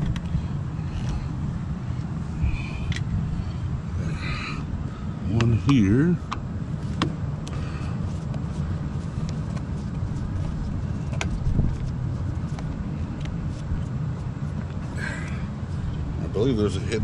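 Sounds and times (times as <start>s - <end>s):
low rumble of traffic: 0.0s - 17.0s.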